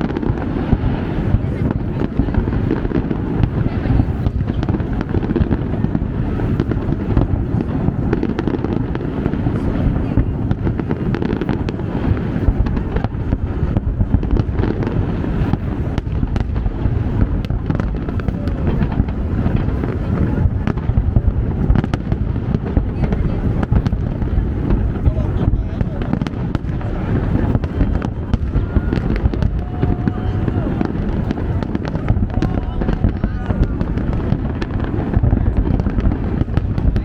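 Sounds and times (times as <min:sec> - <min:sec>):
distant fireworks booms: 0:00.0 - 0:37.0
fireworks crackling pops: 0:00.0 - 0:37.0.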